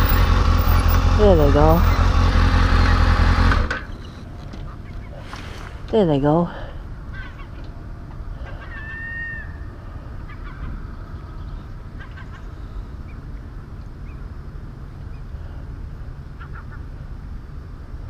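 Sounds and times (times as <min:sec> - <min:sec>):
seagulls calling: 0:03.8 - 0:05.4, 0:07.1 - 0:07.7, 0:08.4 - 0:13.4, 0:16.3 - 0:16.9.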